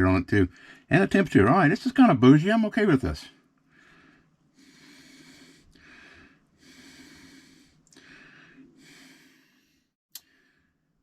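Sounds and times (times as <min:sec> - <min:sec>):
person breathing: 0:00.5 - 0:00.9, 0:03.7 - 0:10.9.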